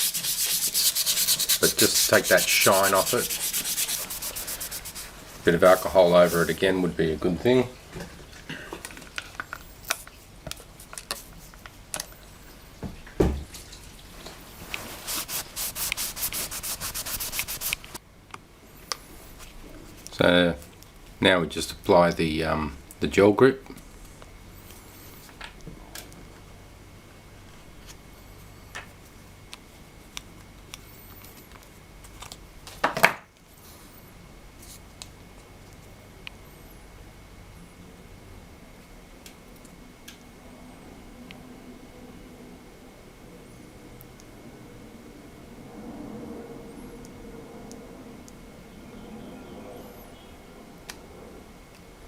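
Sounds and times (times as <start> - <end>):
rubbing strokes on battery: 0.0 - 5.1, 15.0 - 18.0
scraping rustle: 14.4 - 18.0.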